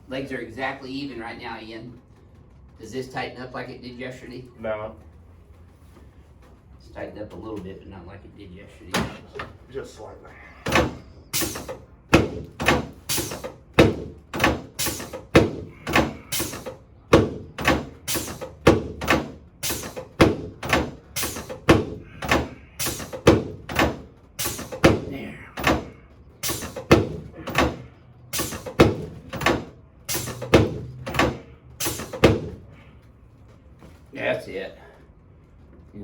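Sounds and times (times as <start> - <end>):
sharp thumps: 10.6 - 32.7.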